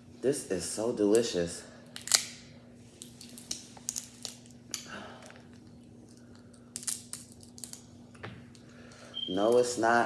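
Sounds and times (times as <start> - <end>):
faint steady hum: 0.0 - 10.0
crab shell clicks and crackles: 6.1 - 7.9.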